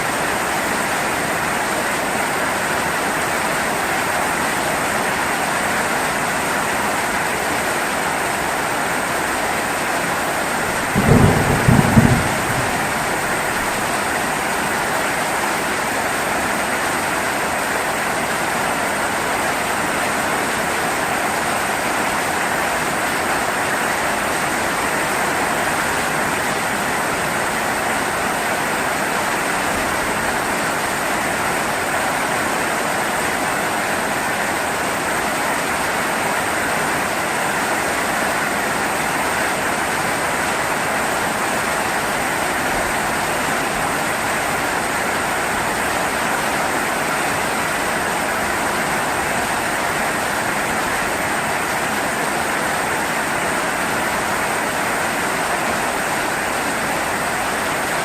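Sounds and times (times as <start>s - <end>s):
heavy rain: 0.0s - 58.0s
thunder rumble: 10.7s - 14.4s.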